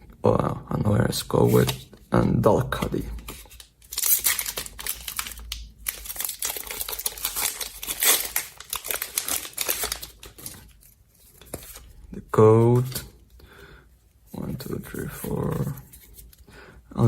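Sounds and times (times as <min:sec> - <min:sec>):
foil wrapper crinkling and tearing: 0:03.4 - 0:11.0.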